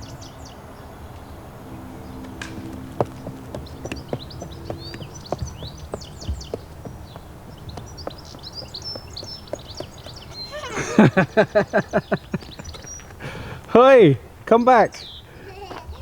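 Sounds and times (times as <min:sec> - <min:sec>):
small birds chirping: 0:00.0 - 0:16.0
rapid falling pitch pulses: 0:01.3 - 0:12.8.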